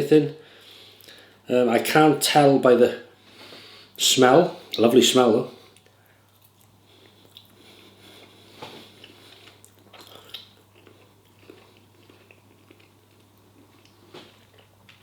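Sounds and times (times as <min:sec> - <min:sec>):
man chewing food: 0:05.6 - 0:15.0.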